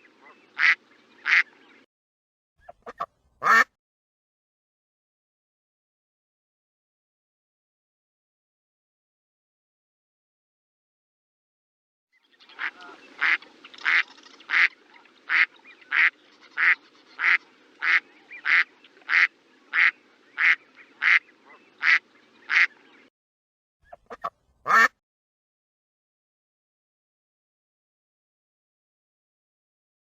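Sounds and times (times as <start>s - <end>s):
duck quacking: 0.2s - 1.5s, 2.6s - 3.7s, 12.6s - 22.8s, 23.9s - 25.0s.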